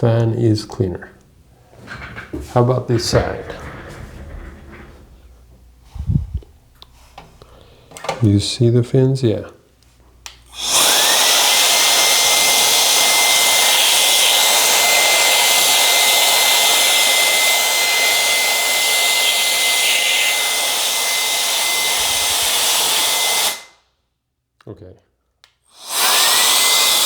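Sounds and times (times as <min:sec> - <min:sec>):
air duster rushing with motor whine: 0:10.5 - 0:23.8, 0:25.8 - 0:27.0.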